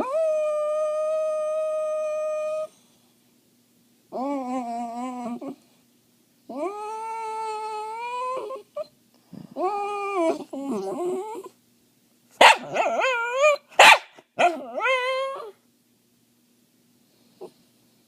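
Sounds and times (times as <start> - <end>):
dog howling: 0.0 - 2.7, 4.1 - 5.6, 6.5 - 8.8, 9.6 - 11.5, 12.6 - 13.6, 14.4 - 15.6
dog sharp cries: 12.4 - 15.5.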